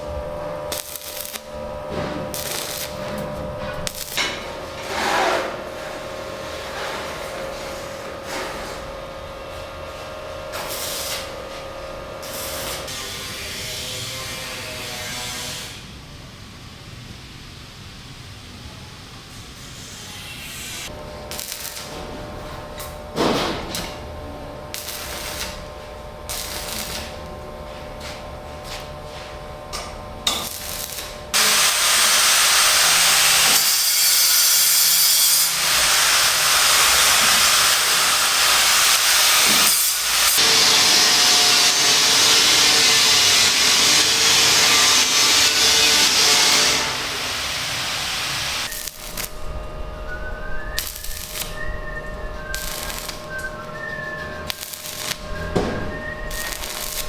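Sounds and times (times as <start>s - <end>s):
power tool running: 0.0s - 8.4s, 30.2s - 50.1s, 50.8s - 57.0s.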